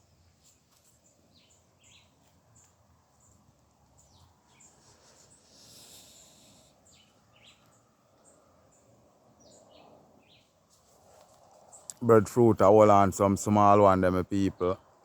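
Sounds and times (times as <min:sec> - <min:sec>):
faint birds chirping: 0:00.0 - 0:15.0
brief hiss: 0:04.7 - 0:06.8.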